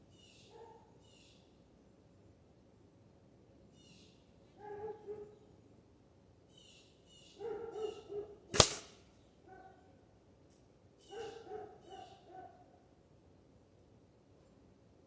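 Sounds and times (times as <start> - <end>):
air rifle shot: 8.6 - 9.0.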